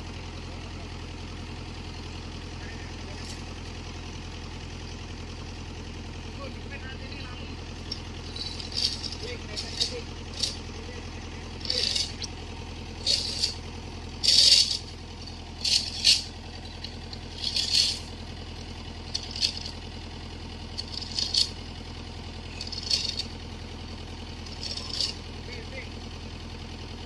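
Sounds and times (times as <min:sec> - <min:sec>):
excavator engine running: 0:00.0 - 0:27.0
machine rattling: 0:07.8 - 0:25.7.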